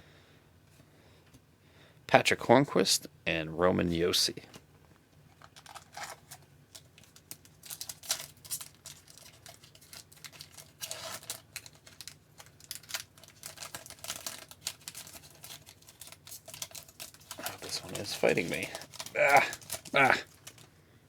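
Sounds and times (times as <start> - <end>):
card rustle: 5.4 - 20.7
trading cards flipping: 12.7 - 20.6.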